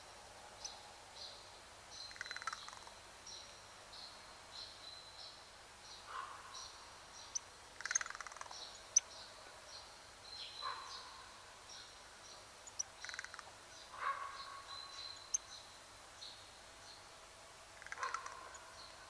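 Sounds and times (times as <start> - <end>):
songbirds chirping: 0.0 - 19.0
bird rattle call: 17.8 - 18.6.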